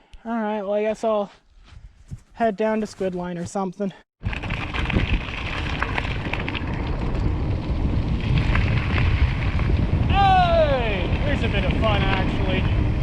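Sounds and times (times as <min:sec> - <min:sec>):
bike rattles and clicks: 0:04.2 - 0:13.0
bike tyres rolling on gravel: 0:04.2 - 0:13.0
wind buffeting microphone: 0:04.2 - 0:13.0.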